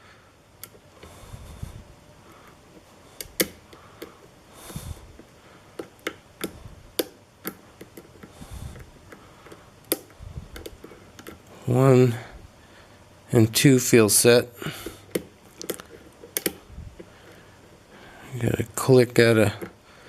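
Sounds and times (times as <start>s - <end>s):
lock pick metal clicks: 15.1s - 16.6s.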